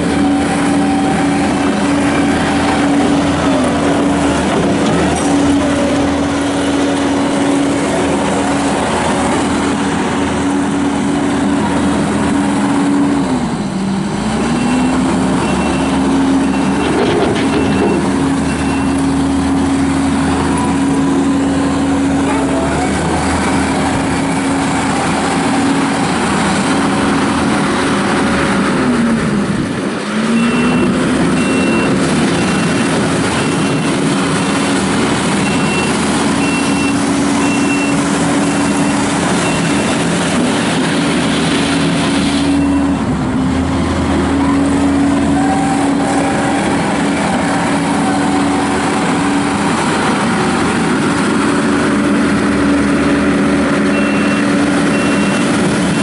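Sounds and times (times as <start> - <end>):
diesel engine running: 0.0 - 56.0
backup alarm beeping: 35.4 - 40.0, 53.9 - 56.0.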